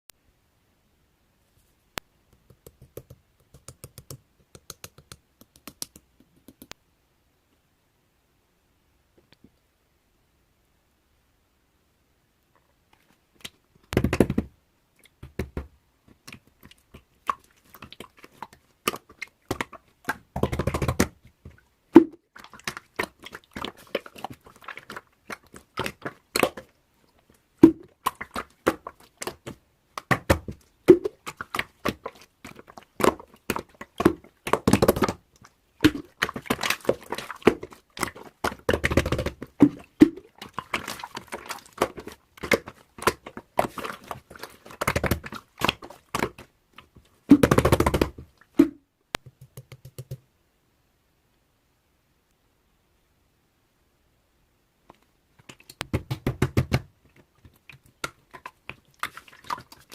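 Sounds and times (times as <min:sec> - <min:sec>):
objects clicking and tapping: 0:02.3 - 0:06.8.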